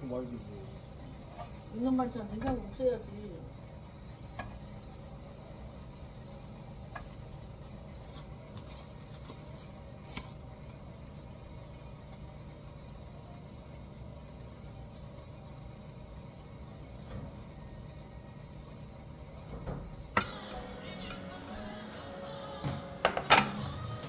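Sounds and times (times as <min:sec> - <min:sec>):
steady low hum: 0:00.0 - 0:24.0
dishes clinking: 0:22.7 - 0:23.9.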